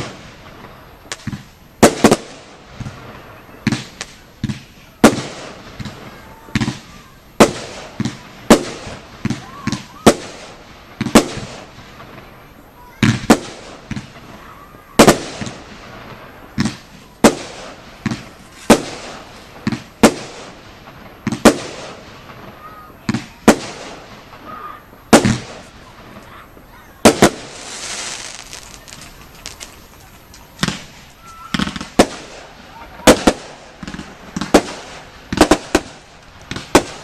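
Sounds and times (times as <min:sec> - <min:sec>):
fireworks bangs: 0:00.0 - 0:37.0
fireworks crackling: 0:00.0 - 0:37.0
hissing burst: 0:23.6 - 0:37.0.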